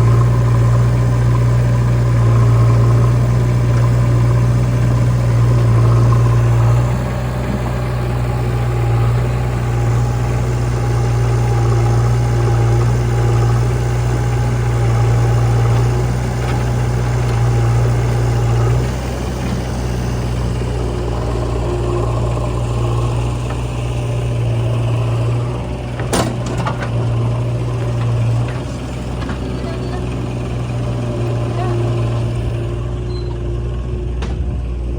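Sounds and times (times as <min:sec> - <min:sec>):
heavy diesel engines droning: 0:00.0 - 0:34.9.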